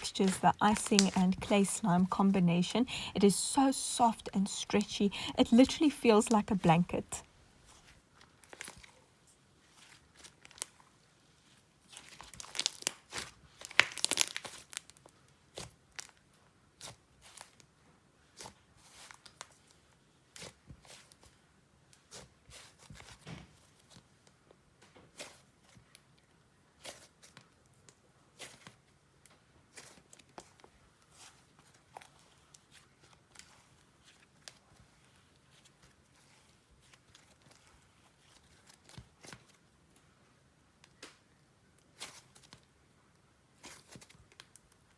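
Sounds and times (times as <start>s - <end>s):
slime squished by hand: 0.2s - 1.1s, 12.0s - 14.8s.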